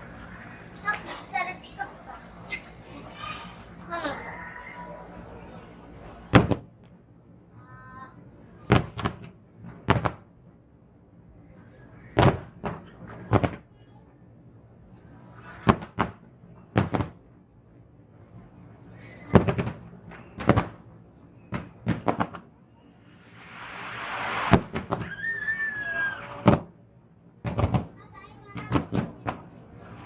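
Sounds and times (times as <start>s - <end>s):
fireworks booming: 6.3s - 7.0s, 8.6s - 10.6s, 12.1s - 13.8s, 15.4s - 17.4s, 19.2s - 30.0s
firework hiss: 21.5s - 26.7s.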